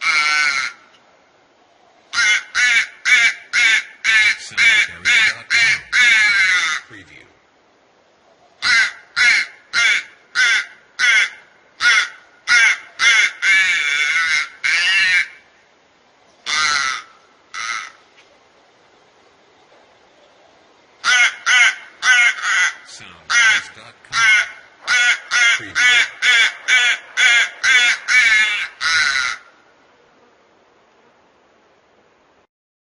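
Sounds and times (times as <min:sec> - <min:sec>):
crow cawing: 0:00.0 - 0:00.9, 0:02.1 - 0:06.9, 0:08.6 - 0:15.5, 0:16.4 - 0:18.0, 0:21.0 - 0:29.6.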